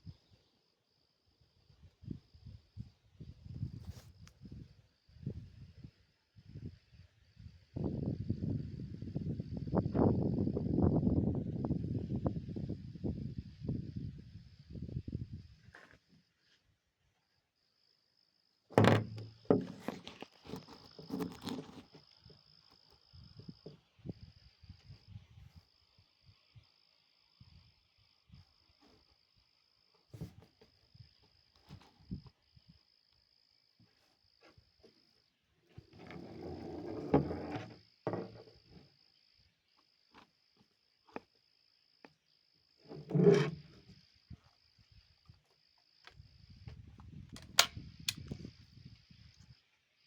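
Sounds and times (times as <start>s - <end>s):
crickets trilling: 0.0s - 50.0s
loud thump: 18.8s - 19.7s
high-pitched insect trill: 21.9s - 29.9s, 37.7s - 50.0s.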